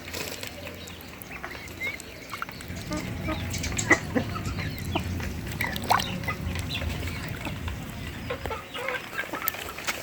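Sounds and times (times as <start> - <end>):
ducklings peeping: 0.0 - 10.0
low hum: 2.2 - 8.7.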